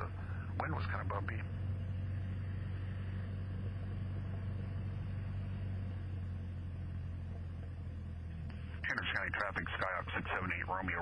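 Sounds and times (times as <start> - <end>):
plane engine droning: 0.0 - 11.0.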